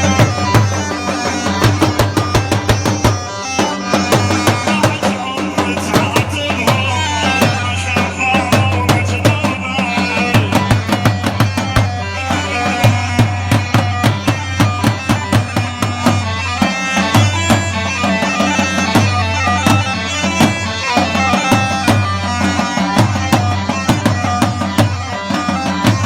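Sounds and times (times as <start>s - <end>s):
fast drum beat: 0.0s - 11.9s
reedy pipe melody: 0.0s - 26.0s.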